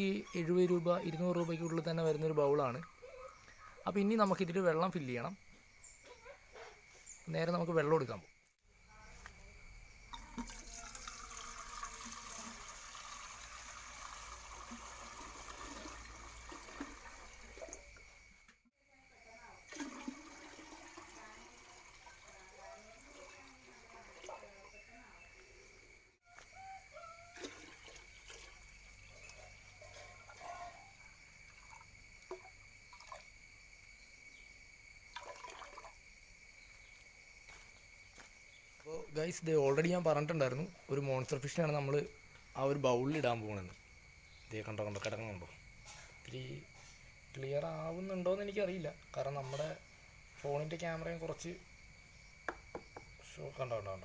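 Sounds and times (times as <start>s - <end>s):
water running from a tap: 10.1s - 17.9s, 19.6s - 24.8s.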